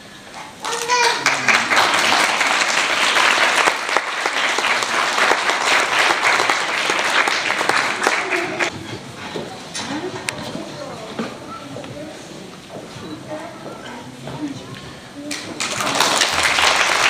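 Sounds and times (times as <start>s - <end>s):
audience applauding: 0.6s - 8.7s, 15.3s - 17.0s.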